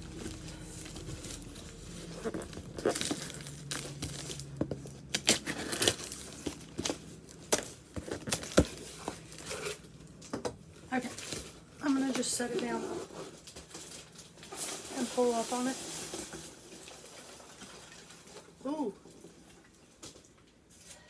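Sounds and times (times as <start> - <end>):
cardboard box crinkling: 0.0 - 9.9
cardboard tearing: 0.1 - 9.9.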